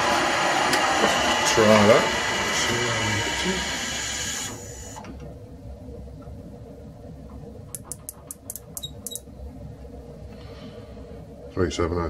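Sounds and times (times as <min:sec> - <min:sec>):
loud cutting noise: 0:00.0 - 0:04.6
low steady hum: 0:00.0 - 0:12.0.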